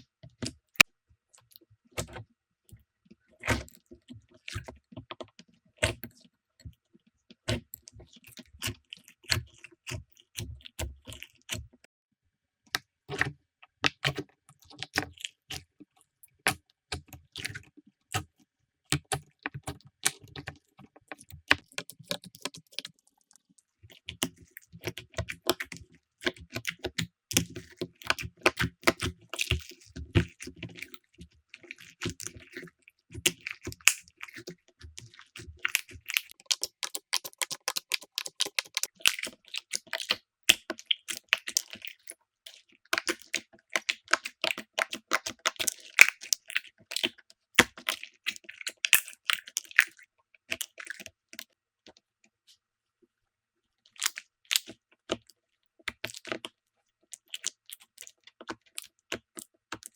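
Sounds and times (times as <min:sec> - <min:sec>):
slime clicking and popping: 0:21.4 - 0:22.9, 0:33.2 - 0:34.5, 0:35.6 - 0:41.9, 0:43.0 - 0:50.7.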